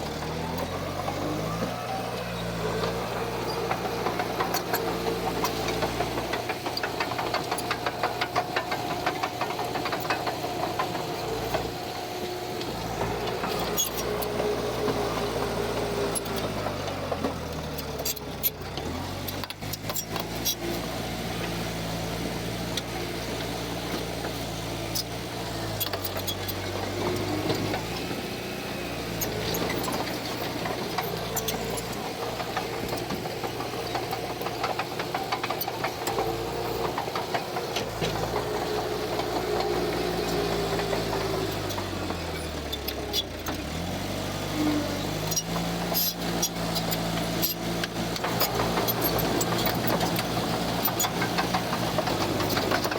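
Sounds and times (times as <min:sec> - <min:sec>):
heavy diesel engine: 0:00.0 - 0:52.9
metal clanks and rattles: 0:02.6 - 0:11.8, 0:29.2 - 0:43.6, 0:45.3 - 0:52.9.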